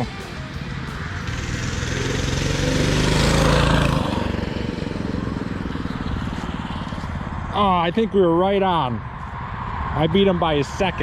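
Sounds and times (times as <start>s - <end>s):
minibike engine running: 0.0s - 7.2s.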